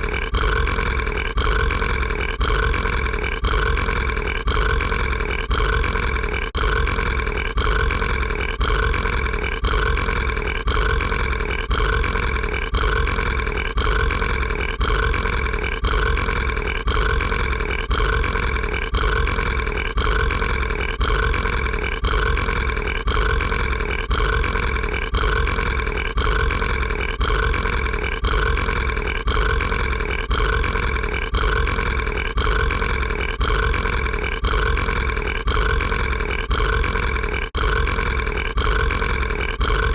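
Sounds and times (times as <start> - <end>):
looped cartoon burp: 0.0 - 39.9.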